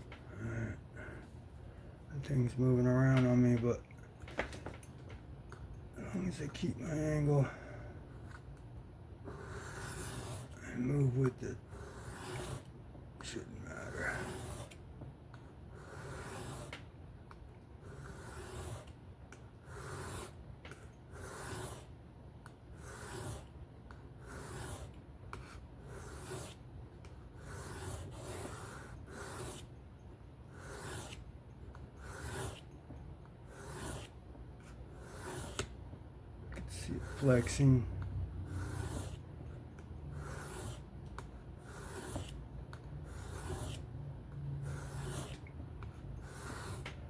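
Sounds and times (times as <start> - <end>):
knife scraping on a whetstone: 22.8 - 23.5, 33.6 - 34.1, 41.7 - 42.4, 43.1 - 43.8.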